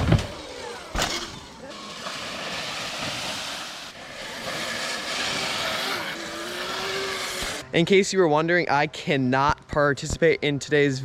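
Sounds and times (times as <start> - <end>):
dirt bike tyres on dirt: 0.0 - 7.7.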